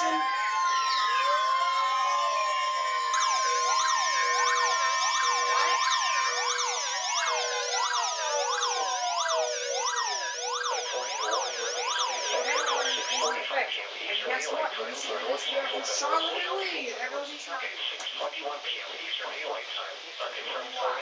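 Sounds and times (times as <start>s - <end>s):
electronic sirens wailing: 0.0s - 16.5s
steady warning alert tone: 3.1s - 13.4s.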